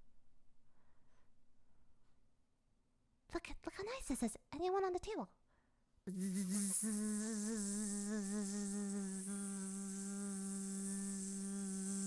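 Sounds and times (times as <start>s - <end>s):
person imitating buzzing: 6.1s - 12.0s.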